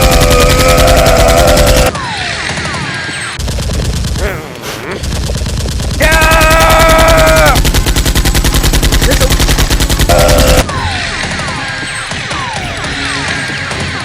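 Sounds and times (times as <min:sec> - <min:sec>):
machine-gun fire: 0:00.0 - 0:01.9, 0:05.0 - 0:13.4.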